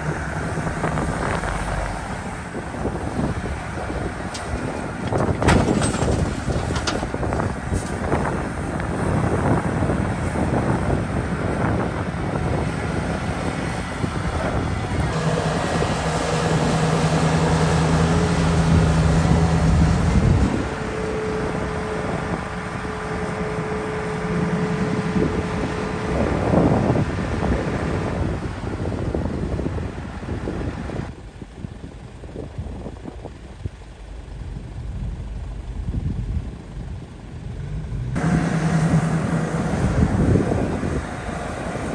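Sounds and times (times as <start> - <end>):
excavator diesel engine running: 0.0 - 41.9
clanks: 4.3 - 8.1.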